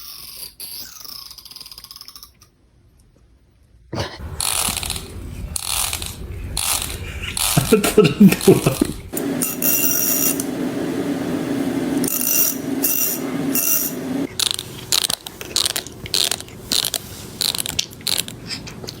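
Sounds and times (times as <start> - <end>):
comb teeth rasping: 14.4 - 19.0.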